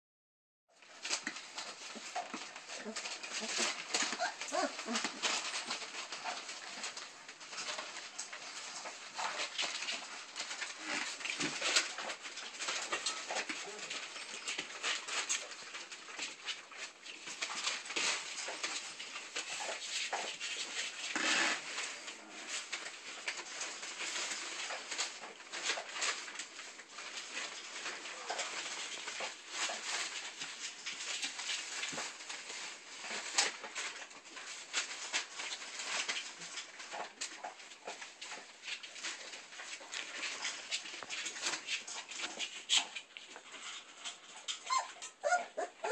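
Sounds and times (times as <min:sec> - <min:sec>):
puppies scuffling: 0:00.7 - 0:45.9
puppies yipping: 0:01.7 - 0:07.0, 0:44.2 - 0:45.9.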